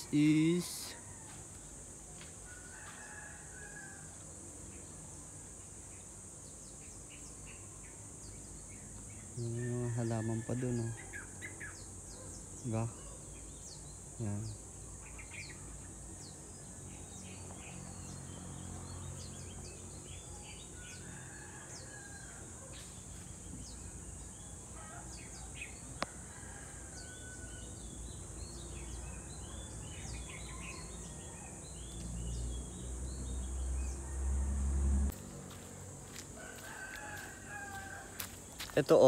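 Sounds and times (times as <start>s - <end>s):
small birds chirping: 10.6s - 34.0s, 35.5s - 39.0s.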